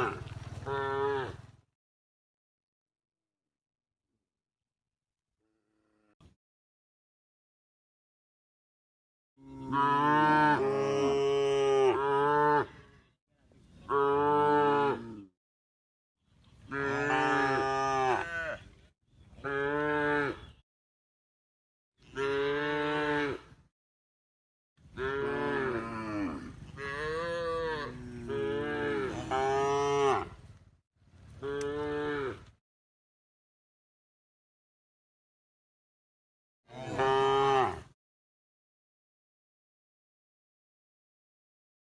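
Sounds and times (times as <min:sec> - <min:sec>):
cows mooing: 0:09.4 - 0:12.8, 0:16.7 - 0:18.6, 0:19.4 - 0:20.5, 0:25.0 - 0:30.4, 0:31.4 - 0:32.5, 0:36.7 - 0:37.9.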